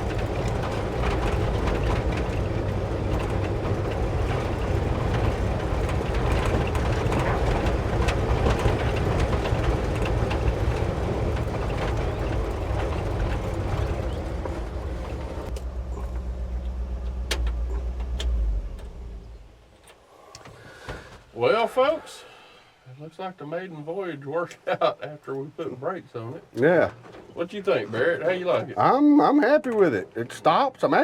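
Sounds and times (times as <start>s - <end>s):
truck engine: 0.0s - 20.5s
road noise: 0.0s - 31.0s.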